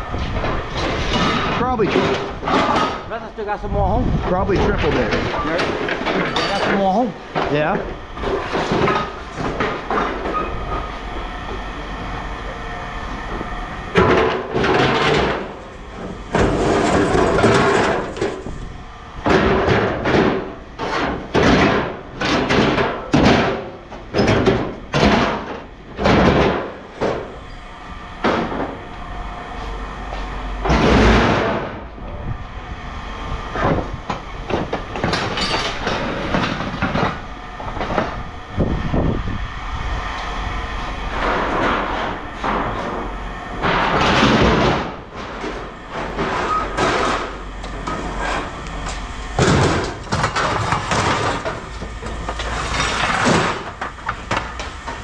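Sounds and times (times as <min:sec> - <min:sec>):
scrap metal clanks and scrapes: 0:00.2 - 0:03.1, 0:35.0 - 0:37.2, 0:43.6 - 0:54.4.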